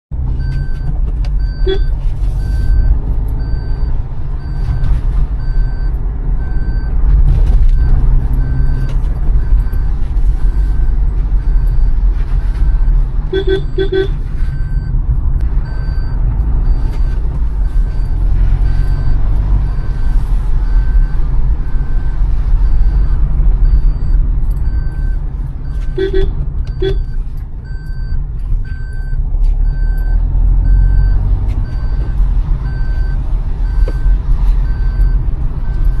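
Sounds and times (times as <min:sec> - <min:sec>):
car rumbling over stony road: 0:00.1 - 0:36.0
electronic beep: 0:00.4 - 0:07.0, 0:12.6 - 0:15.0, 0:15.6 - 0:17.0, 0:17.6 - 0:34.1
car horn toots: 0:01.6 - 0:01.9, 0:13.3 - 0:14.2, 0:25.8 - 0:27.1.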